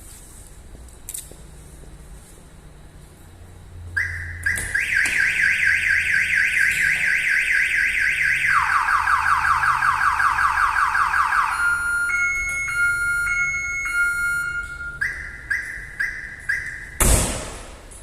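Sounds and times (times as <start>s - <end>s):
car alarm siren whooping: 4.0s - 17.0s.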